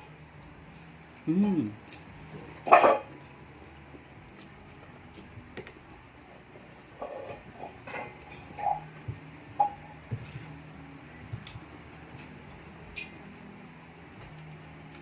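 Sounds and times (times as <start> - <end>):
chewing and mouth noises: 0.1 - 2.7.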